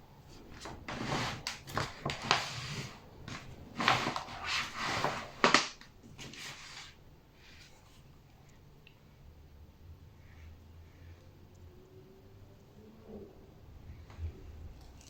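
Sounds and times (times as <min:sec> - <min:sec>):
objects clicking and scraping: 0:00.3 - 0:06.7.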